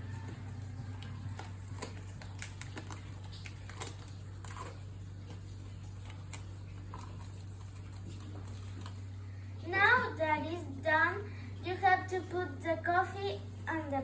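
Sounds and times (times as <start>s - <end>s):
plastic film crinkling: 0.0s - 9.3s
steady low hum: 0.0s - 14.0s.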